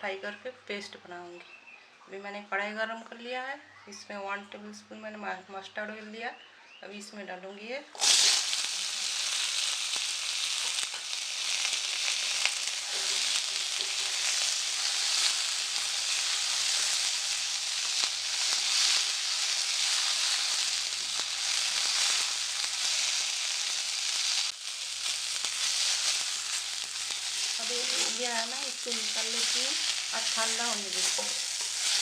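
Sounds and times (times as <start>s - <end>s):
vegetables sizzling in hot oil: 8.0s - 32.0s.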